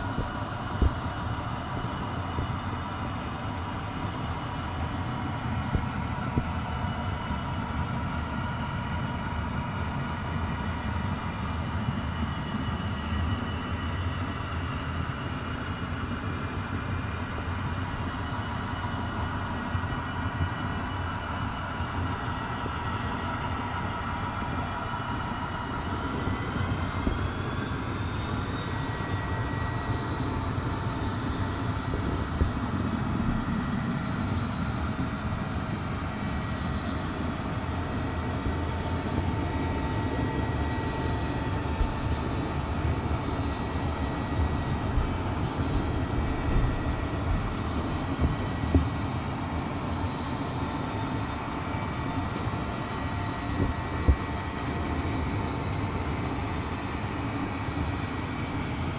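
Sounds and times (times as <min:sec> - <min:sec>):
faint high whine: 0:00.0 - 0:58.9
train rumbling: 0:25.9 - 0:36.4, 0:39.2 - 0:52.7.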